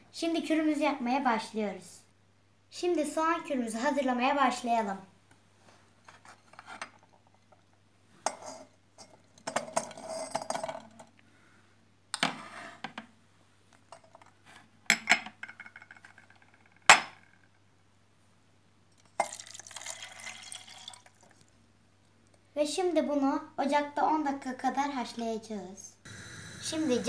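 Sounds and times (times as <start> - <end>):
kitchenware clinking and clattering: 8.3 - 11.1.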